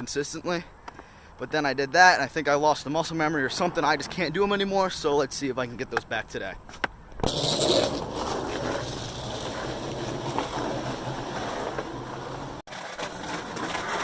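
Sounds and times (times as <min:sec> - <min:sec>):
rolling rumble: 0:07.2 - 0:14.0.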